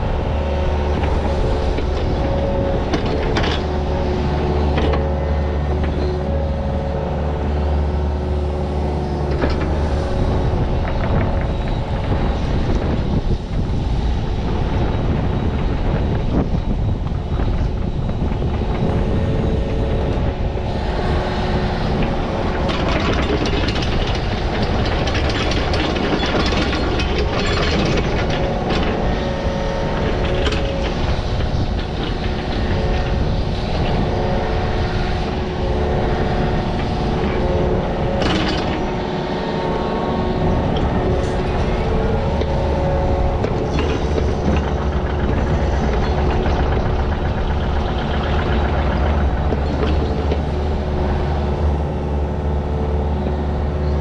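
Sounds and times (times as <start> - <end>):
digging machine engine running: 0.0 - 54.0
metallic clanks and rattles: 22.6 - 34.1, 37.2 - 39.1.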